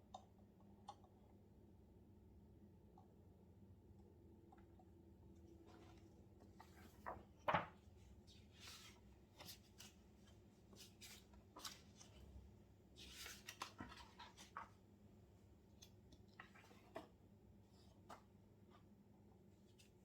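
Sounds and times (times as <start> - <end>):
scratchy paper rustles: 13.0 - 14.8.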